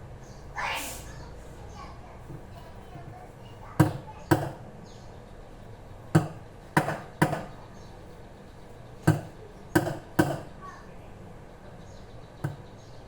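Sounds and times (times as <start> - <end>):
hard object knocking: 6.1 - 7.5, 9.1 - 10.5, 12.4 - 12.7.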